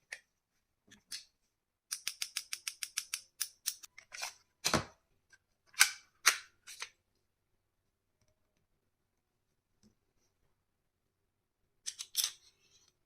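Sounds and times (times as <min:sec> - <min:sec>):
toy pistol plastic clicks: 0:01.9 - 0:03.9.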